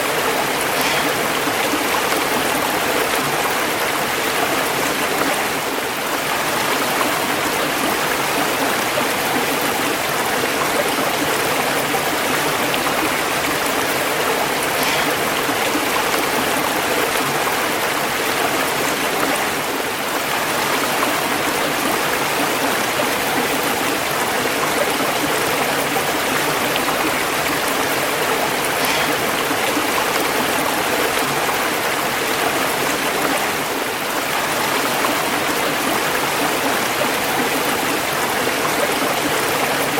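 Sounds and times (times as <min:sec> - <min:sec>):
stream rushing and splashing: 0:00.0 - 0:39.9.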